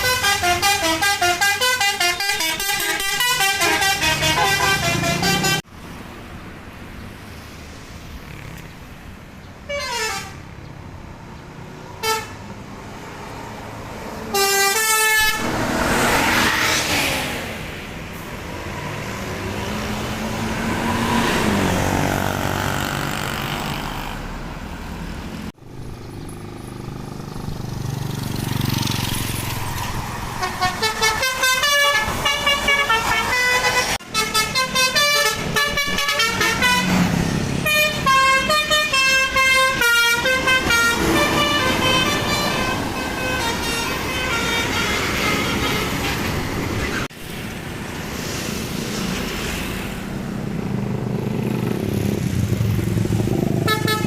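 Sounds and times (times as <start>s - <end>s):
musical air horn melody: 0.0s - 5.6s, 9.7s - 10.4s, 12.0s - 12.4s, 14.3s - 15.7s, 30.4s - 37.0s, 37.6s - 46.4s, 53.7s - 54.0s
bus engine running: 0.0s - 5.7s, 21.4s - 49.2s.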